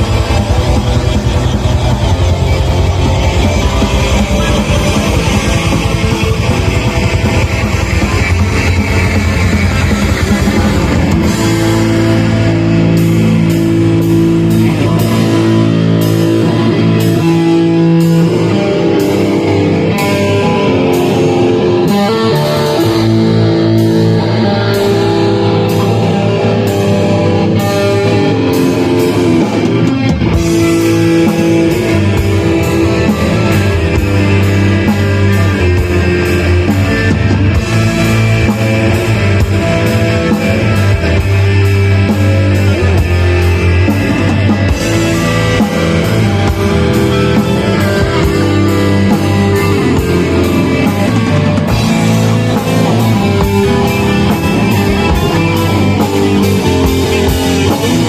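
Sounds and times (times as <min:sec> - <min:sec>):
distorted electric guitars: 0:00.0 - 0:58.0
drums: 0:00.0 - 0:58.0.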